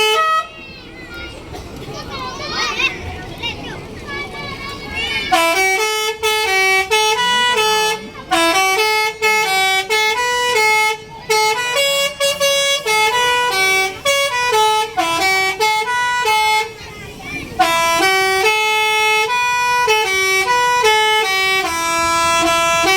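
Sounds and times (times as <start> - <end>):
musical air horn playing a tune: 0.0 - 0.6, 5.3 - 16.8, 17.5 - 22.9.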